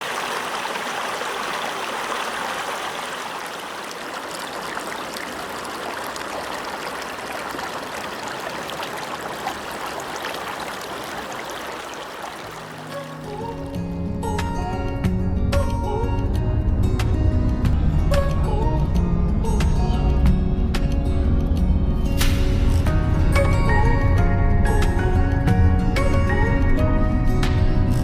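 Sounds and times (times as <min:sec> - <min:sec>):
stream flowing over rocks: 0:00.0 - 0:13.7.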